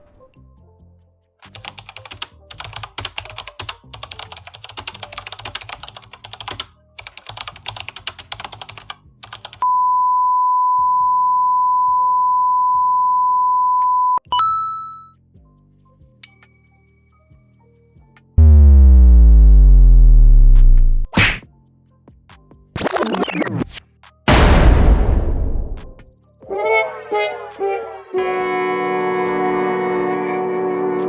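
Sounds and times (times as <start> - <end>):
quiet background music: 0.0 - 9.6
bright ringing ding: 14.3 - 15.1.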